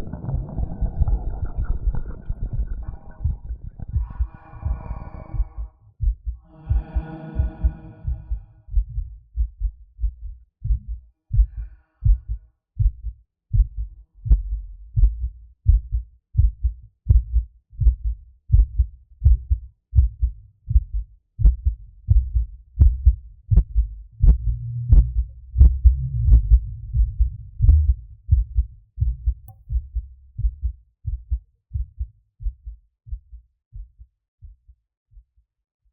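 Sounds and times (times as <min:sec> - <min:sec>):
low whooshing: 0:00.0 - 0:08.6, 0:24.2 - 0:28.4
heartbeat through stethoscope: 0:00.0 - 0:35.4.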